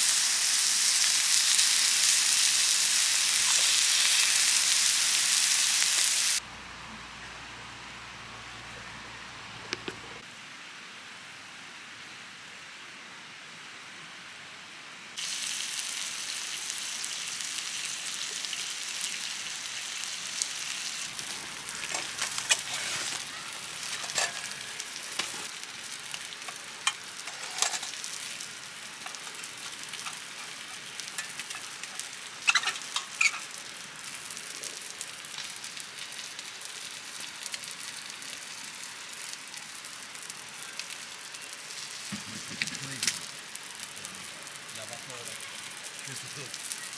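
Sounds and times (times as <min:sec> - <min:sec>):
chicken sizzling on griddle: 0:00.0 - 0:06.4, 0:15.2 - 0:46.9.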